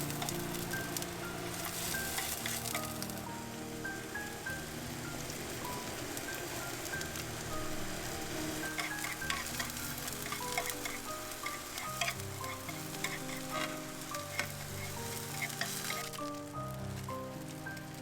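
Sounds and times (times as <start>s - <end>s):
food sizzling in a pan: 0.0s - 18.0s
soft plucked background music: 0.0s - 18.0s.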